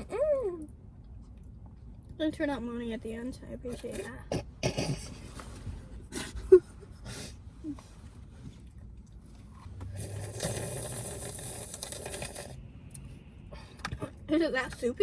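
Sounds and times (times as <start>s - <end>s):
slurping melted frozen yogurt: 10.0s - 12.6s.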